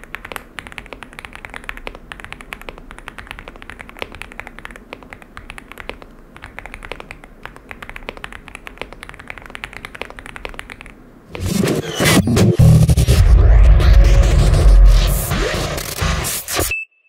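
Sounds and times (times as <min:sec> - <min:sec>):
loud music: 0:11.4 - 0:16.7.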